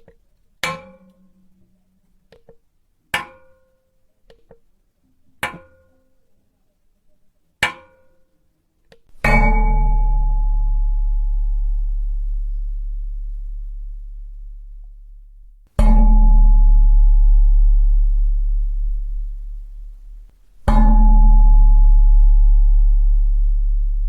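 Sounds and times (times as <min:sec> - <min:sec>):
metal clanging: 0:00.6 - 0:01.7
heavy metal hit ringing: 0:09.2 - 0:15.2, 0:15.8 - 0:24.0.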